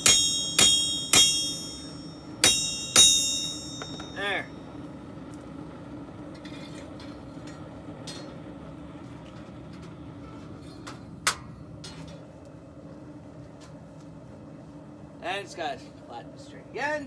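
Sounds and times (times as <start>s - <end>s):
sharp metallic clank: 0.0s - 4.6s
steady machine hum: 0.0s - 17.0s.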